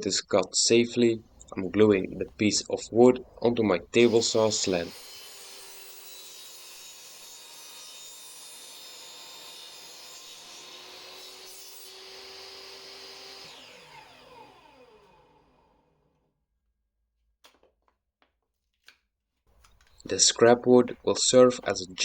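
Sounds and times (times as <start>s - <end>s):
table saw running: 4.0s - 16.1s.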